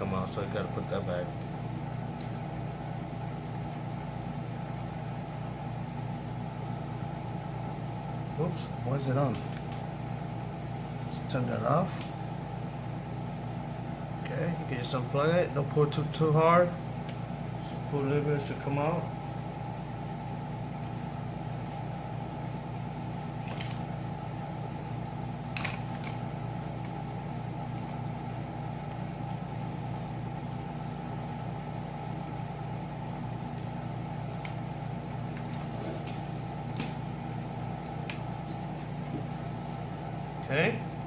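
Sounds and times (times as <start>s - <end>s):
air conditioner humming: 0.0s - 41.0s.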